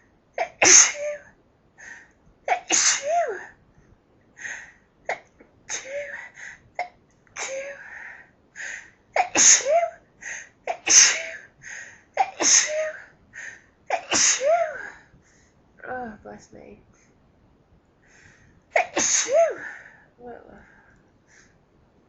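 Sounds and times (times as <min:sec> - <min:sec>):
woman sneezing: 0:02.6 - 0:03.5, 0:14.0 - 0:14.8, 0:18.8 - 0:19.7.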